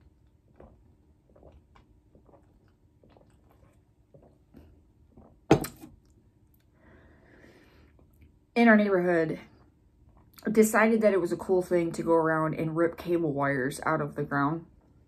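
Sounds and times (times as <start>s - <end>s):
chewing food: 0.0s - 5.3s.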